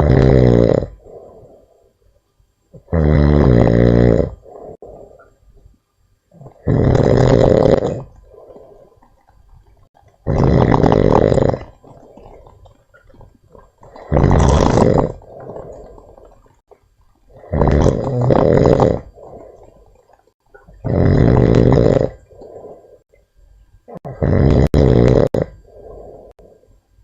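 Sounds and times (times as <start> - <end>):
monkey snoring: 0.0 - 1.8, 2.8 - 5.3, 6.3 - 8.9, 10.2 - 12.6, 13.9 - 16.0, 17.3 - 19.6, 20.8 - 23.0, 23.9 - 26.6
soft breaths: 0.9 - 2.4, 4.4 - 6.6, 8.0 - 10.0, 19.1 - 20.4, 22.2 - 24.1, 25.5 - 27.0.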